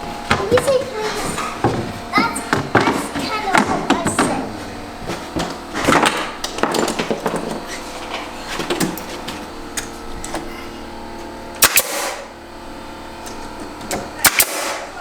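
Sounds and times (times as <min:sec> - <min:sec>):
nailing cracks: 0:11.6 - 0:12.2, 0:14.2 - 0:14.9.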